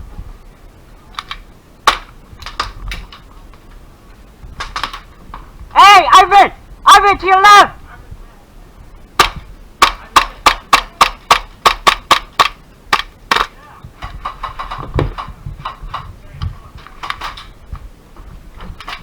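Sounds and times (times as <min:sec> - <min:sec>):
scattered clicks and knocks: 0:01.1 - 0:03.6, 0:04.6 - 0:05.5, 0:09.2 - 0:17.9, 0:18.6 - 0:19.0
airsoft gun shots: 0:01.2 - 0:02.8, 0:09.2 - 0:14.9
dull thump: 0:14.0 - 0:16.6.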